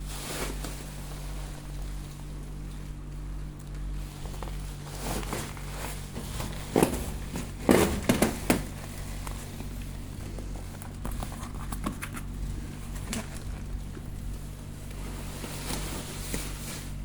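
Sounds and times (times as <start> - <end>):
steady low hum: 0.0 - 17.0
light crinkling and ticks: 1.7 - 6.2, 8.6 - 16.6
handling knocks and clicks: 5.2 - 14.4.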